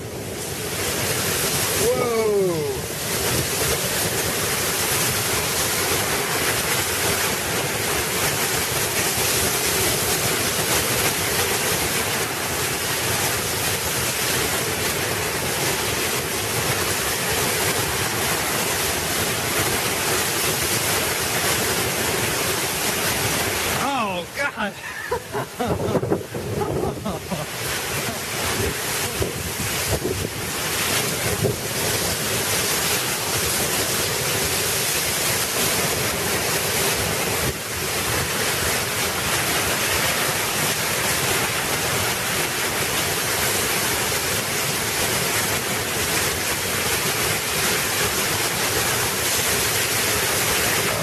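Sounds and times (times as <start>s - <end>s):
torrential rain pouring: 0.0s - 51.0s
wind gusting over microphone: 25.1s - 33.6s.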